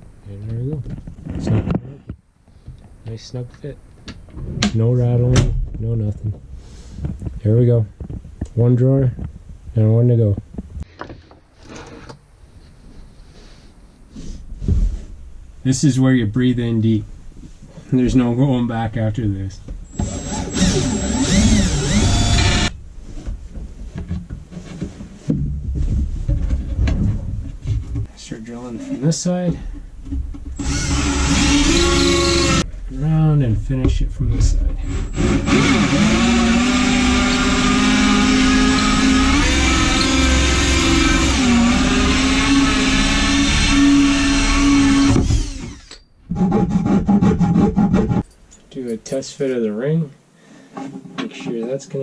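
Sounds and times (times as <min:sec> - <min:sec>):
power drill with hole saw: 0:19.9 - 0:22.7, 0:30.6 - 0:32.6, 0:34.8 - 0:46.0.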